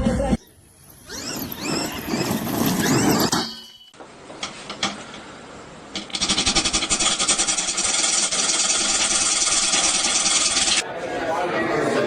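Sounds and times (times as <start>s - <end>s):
small motor rattling: 0.8s - 3.4s, 6.1s - 10.8s.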